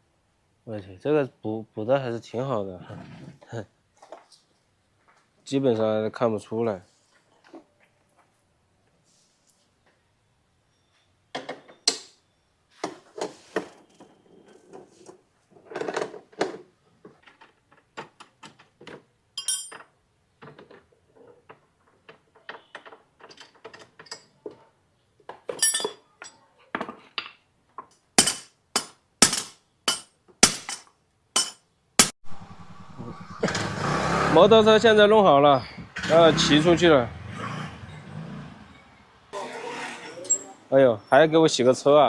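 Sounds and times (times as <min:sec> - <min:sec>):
hand tools clinking on metal: 0:19.4 - 0:19.9, 0:25.5 - 0:26.4, 0:28.2 - 0:31.6.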